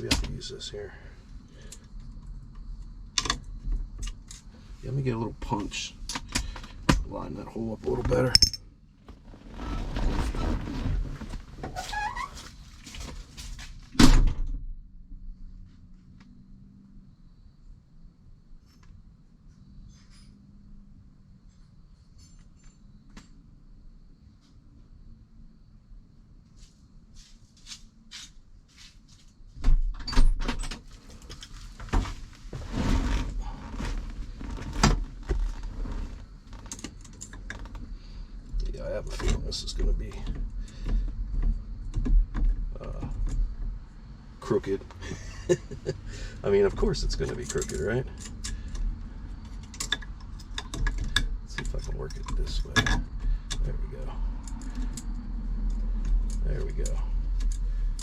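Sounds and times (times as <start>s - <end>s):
scraping and rubbing: 9.0s - 13.5s, 31.6s - 36.7s
short rising squeak: 9.2s - 12.4s.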